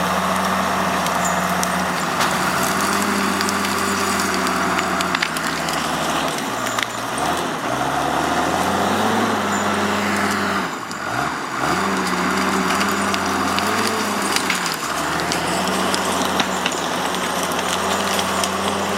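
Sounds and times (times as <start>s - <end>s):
diesel engine under load: 0.0s - 18.9s
sharp cracks and knocks: 0.4s - 7.6s, 11.8s - 18.9s.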